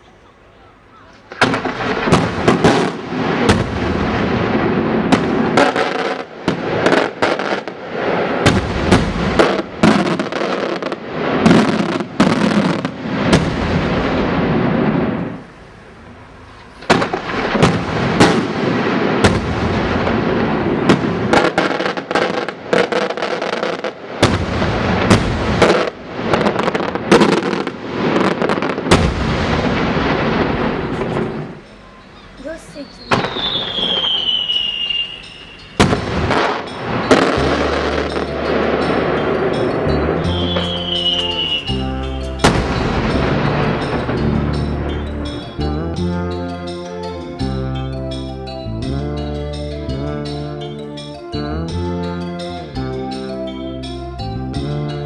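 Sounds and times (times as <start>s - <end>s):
fireworks bangs and cracks: 1.2s - 15.4s, 16.8s - 31.6s, 33.0s - 35.2s, 35.8s - 45.6s
fireworks crackling roar: 1.2s - 31.8s, 32.6s - 52.4s.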